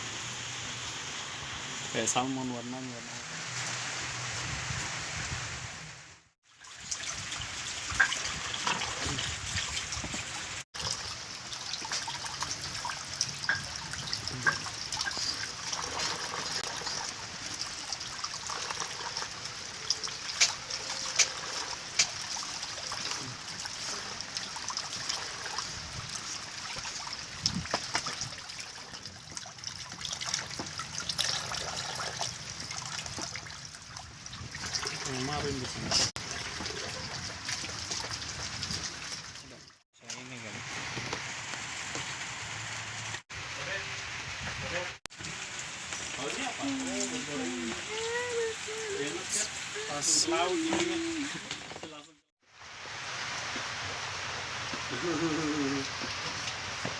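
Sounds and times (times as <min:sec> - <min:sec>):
water trickling: 0:06.4 - 0:39.8, 0:45.1 - 0:52.0
small splashes and clicks: 0:06.6 - 0:40.2.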